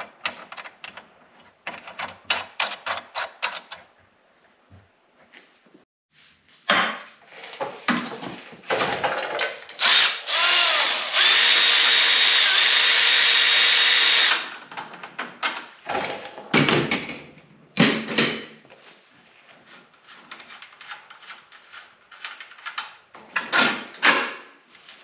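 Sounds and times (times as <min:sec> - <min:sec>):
power drill spinning: 0:09.8 - 0:14.6
tools clanking: 0:15.9 - 0:18.7.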